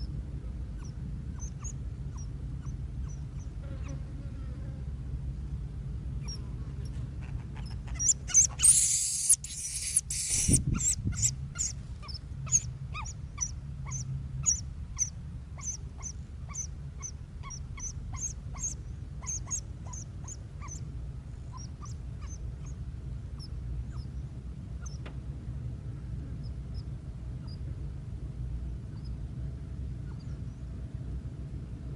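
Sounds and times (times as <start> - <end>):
steady low rumble: 0.0 - 31.9
short high bird calls: 7.2 - 20.8
loud hiss: 8.6 - 10.6.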